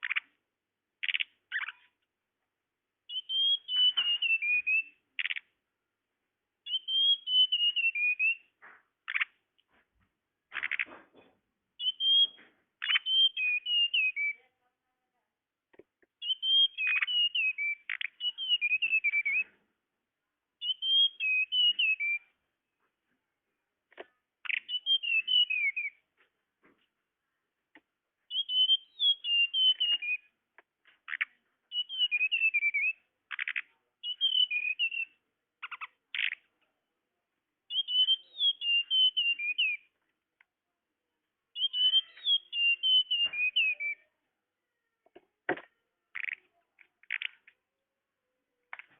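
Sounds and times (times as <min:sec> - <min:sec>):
bird twittering song: 0:00.0 - 0:00.4, 0:01.0 - 0:02.0, 0:03.0 - 0:05.6, 0:06.6 - 0:09.4, 0:10.5 - 0:11.2, 0:11.8 - 0:14.5, 0:16.2 - 0:19.6, 0:20.6 - 0:22.4, 0:23.9 - 0:26.0, 0:28.2 - 0:36.6, 0:37.7 - 0:40.0, 0:41.5 - 0:44.2, 0:44.8 - 0:47.6.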